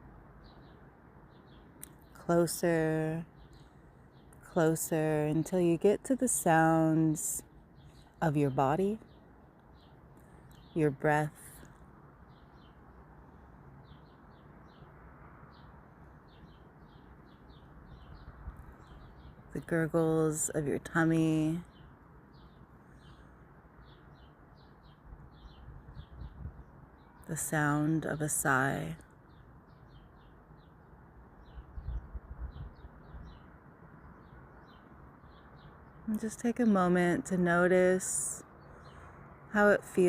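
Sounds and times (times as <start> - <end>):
low steady background hum: 0.0 - 15.0
outdoor background hiss: 0.0 - 40.0
birds chirping: 15.5 - 33.6, 34.2 - 40.0.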